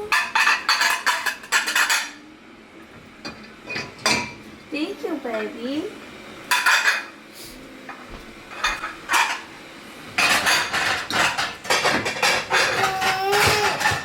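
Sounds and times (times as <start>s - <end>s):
plates and cutlery clattering: 0.0s - 2.2s, 3.2s - 4.4s, 6.5s - 7.2s, 8.5s - 9.5s, 10.1s - 14.0s.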